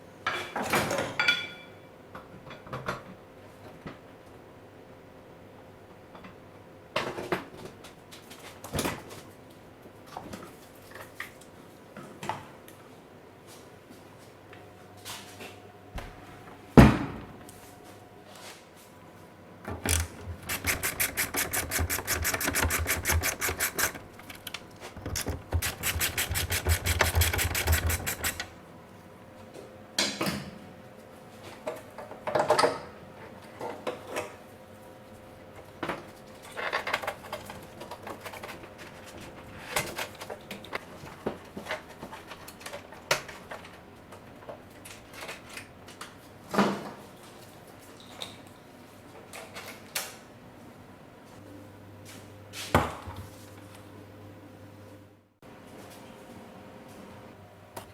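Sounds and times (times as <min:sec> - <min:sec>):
power tool rattling: 0:19.7 - 0:28.5.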